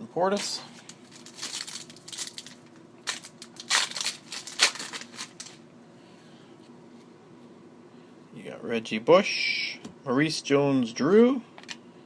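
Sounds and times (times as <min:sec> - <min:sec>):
cards and wrapper crinkling: 0:00.3 - 0:05.6.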